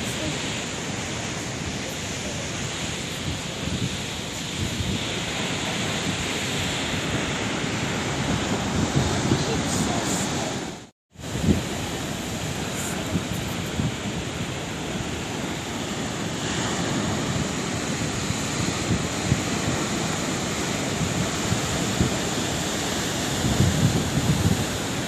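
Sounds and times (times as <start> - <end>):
sea waves washing onto shore: 0.0 - 25.0
wind buffeting microphone: 0.0 - 25.0.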